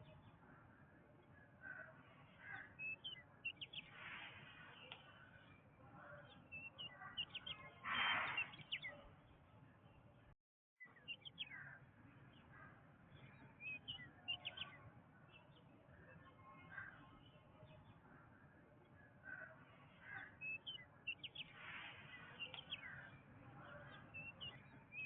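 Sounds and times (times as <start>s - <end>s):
birds chirping and whistling: 6.6s - 8.9s.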